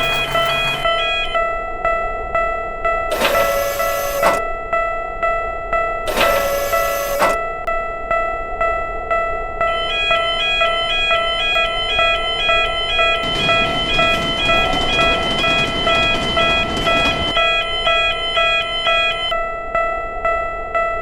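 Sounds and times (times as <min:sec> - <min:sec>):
train rushing past: 0:00.0 - 0:01.4, 0:09.8 - 0:19.3
railroad crossing bells ringing: 0:00.0 - 0:21.0.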